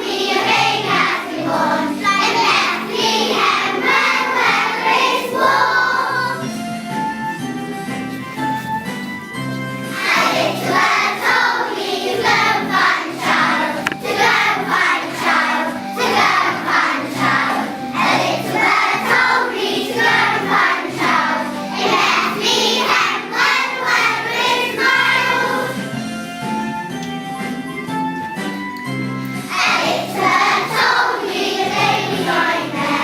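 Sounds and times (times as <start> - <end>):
choir singing: 0.0 - 6.4, 9.9 - 25.8, 29.5 - 33.0
instrumental accompaniment: 0.1 - 33.0.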